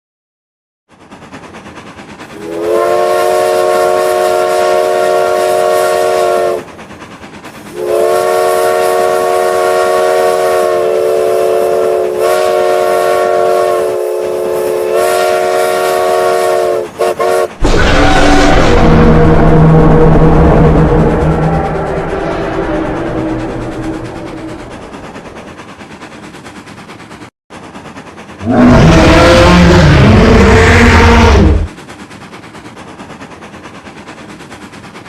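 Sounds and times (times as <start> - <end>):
rhythmic chuffing: 0.9 - 35.0
steam locomotive chime whistle: 2.4 - 6.7, 7.7 - 24.0.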